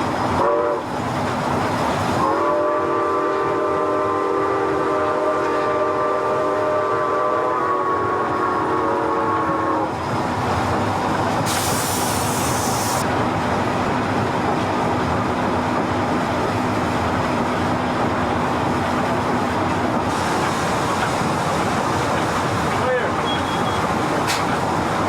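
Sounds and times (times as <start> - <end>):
locomotive engine rumbling: 0.0 - 25.0
steam locomotive chime whistle: 2.2 - 9.9, 23.1 - 24.0
steam hiss: 11.4 - 13.1, 20.0 - 22.4.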